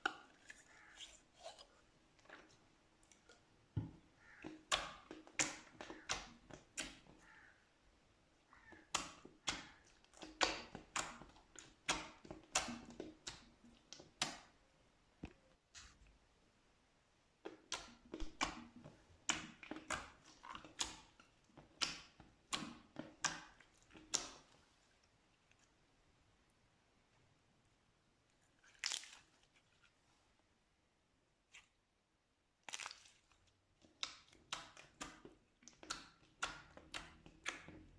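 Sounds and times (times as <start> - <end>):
slime popping and squelching: 2.2 - 7.3, 8.6 - 14.6, 28.6 - 29.6, 32.6 - 37.9.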